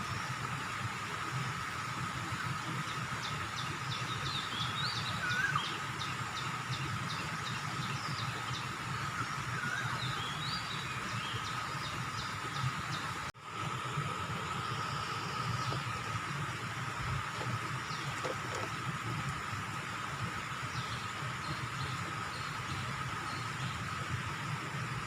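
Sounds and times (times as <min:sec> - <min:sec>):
small bird chirping and whistling: 0:04.4 - 0:05.8.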